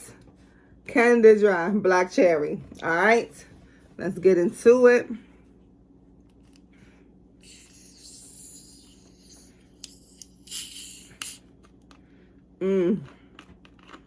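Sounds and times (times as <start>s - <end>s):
soda opening fizz: 7.4s - 11.4s.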